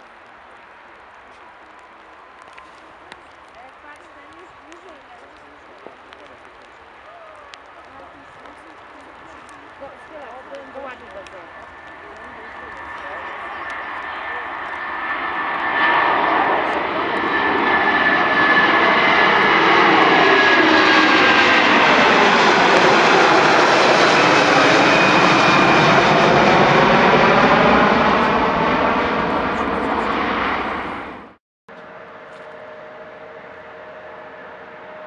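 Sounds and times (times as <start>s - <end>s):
airliner engine noise: 0.0s - 35.0s.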